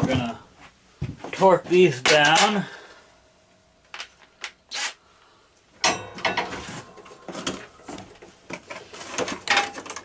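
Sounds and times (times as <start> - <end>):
metal tools clinking and clattering: 5.8 - 7.0.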